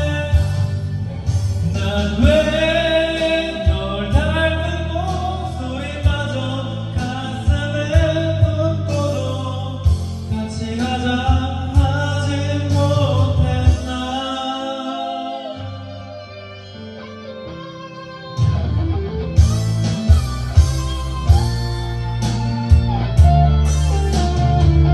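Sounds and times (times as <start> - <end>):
song with sung vocals: 0.0 - 17.6
bass line: 0.0 - 24.9.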